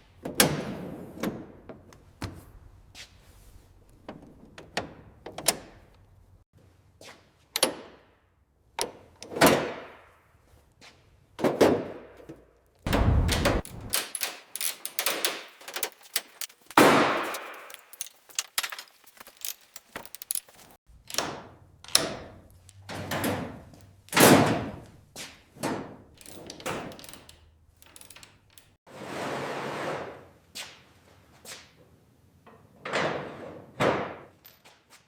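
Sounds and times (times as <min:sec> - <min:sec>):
knocks and clinks on metal: 0:13.7 - 0:24.2, 0:26.2 - 0:28.8.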